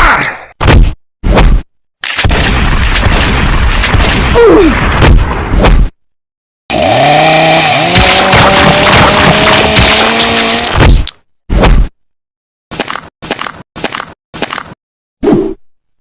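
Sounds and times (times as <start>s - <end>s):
motor revving: 6.7s - 10.8s
cartoon hits and crashes: 7.9s - 11.9s.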